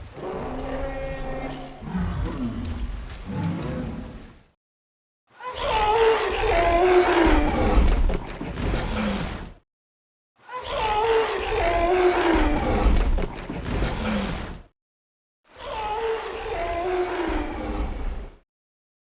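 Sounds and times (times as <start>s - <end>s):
dinosaur roar: 0.0s - 4.2s, 5.6s - 7.9s, 10.6s - 13.0s, 15.6s - 18.1s.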